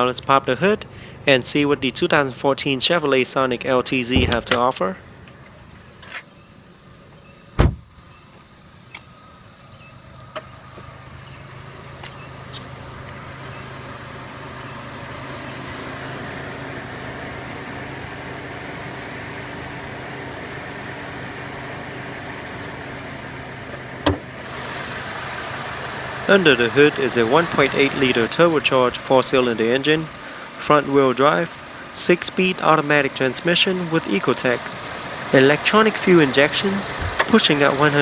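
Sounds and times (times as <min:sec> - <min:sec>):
car engine idling: 0:00.0 - 0:06.0, 0:07.9 - 0:38.0
sharp knock: 0:04.2 - 0:04.6.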